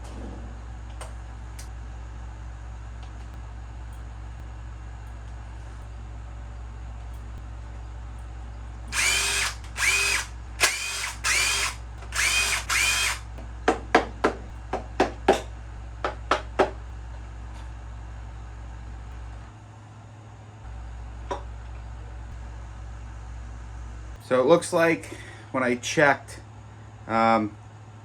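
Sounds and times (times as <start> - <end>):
steady low hum: 0.0 - 28.0
power drill motor whine: 8.9 - 13.2.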